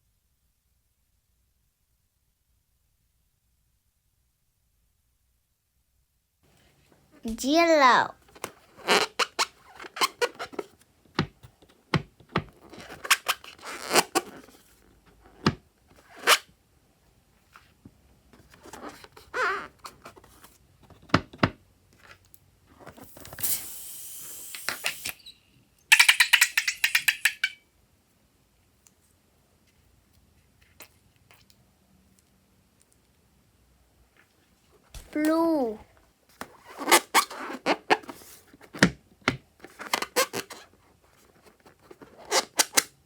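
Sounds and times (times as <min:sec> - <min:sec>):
hiss: 0:23.1 - 0:25.3
clicks and taps: 0:25.9 - 0:27.6.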